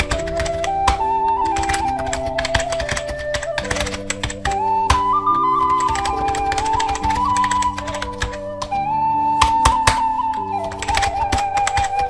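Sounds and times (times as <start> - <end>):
flute-like melody over chords: 0.0 - 12.0
sharp clicks and taps: 9.4 - 12.0.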